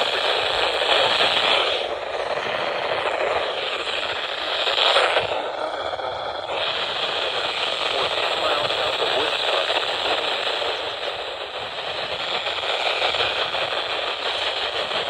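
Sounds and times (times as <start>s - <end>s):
radio static hiss: 0.0s - 15.0s.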